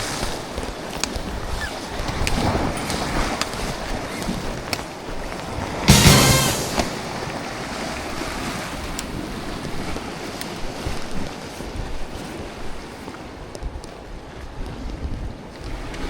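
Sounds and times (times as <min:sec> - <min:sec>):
wind buffeting microphone: 0:00.0 - 0:05.9, 0:06.9 - 0:16.0
sea waves washing against rocks: 0:00.0 - 0:13.4.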